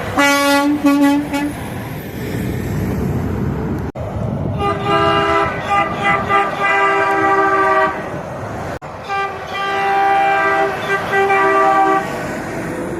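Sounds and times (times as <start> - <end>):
truck air horn chord: 0.2 - 1.5, 4.6 - 8.0, 9.0 - 12.1.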